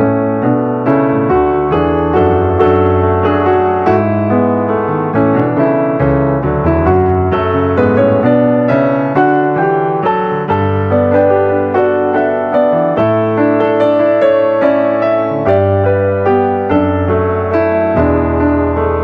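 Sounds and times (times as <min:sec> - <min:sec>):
piano music: 0:00.0 - 0:19.0.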